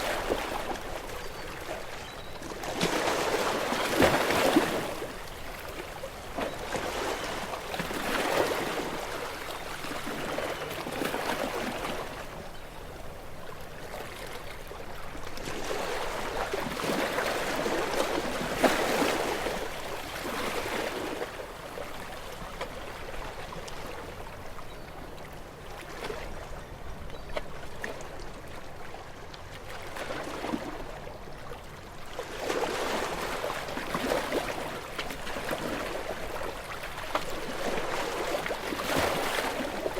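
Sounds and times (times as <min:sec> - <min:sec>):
sea waves breaking against rocks: 0:00.0 - 0:12.4, 0:13.7 - 0:24.2, 0:32.1 - 0:39.9.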